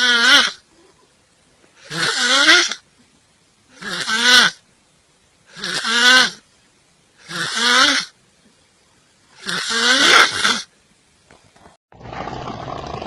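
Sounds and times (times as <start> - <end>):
person snoring loudly: 3.8 - 4.6, 5.5 - 6.4, 7.2 - 8.1, 9.4 - 10.7, 12.0 - 13.0.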